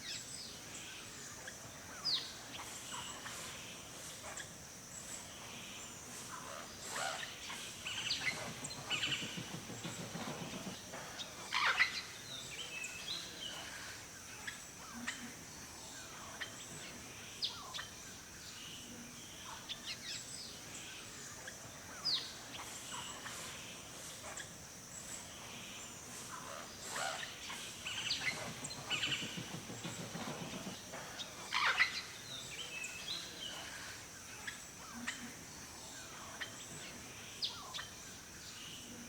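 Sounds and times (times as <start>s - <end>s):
birds chirping: 22.6s - 34.6s.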